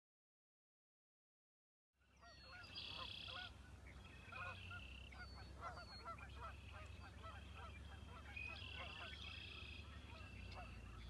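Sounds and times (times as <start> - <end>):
waterfowl flock honking: 2.2 - 11.0
low steady rumble: 2.7 - 11.0.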